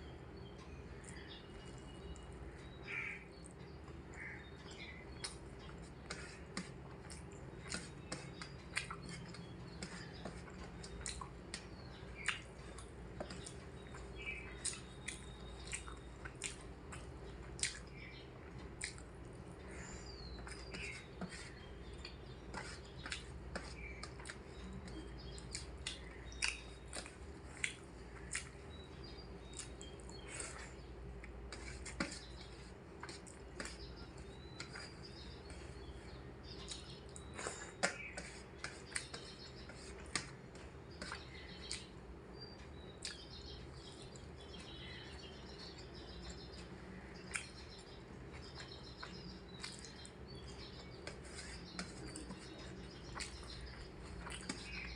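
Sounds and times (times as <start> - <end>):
faint bird chirps: 0.0 - 19.0, 40.8 - 54.9
steady low hum: 0.0 - 54.9
person chewing: 5.2 - 17.9, 18.5 - 19.4, 20.1 - 41.9, 47.3 - 47.7, 48.3 - 54.9.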